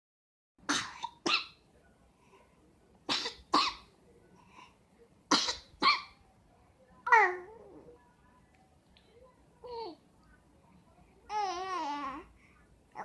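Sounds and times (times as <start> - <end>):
baby coughing: 0.7 - 1.6, 3.1 - 3.9, 5.3 - 6.2.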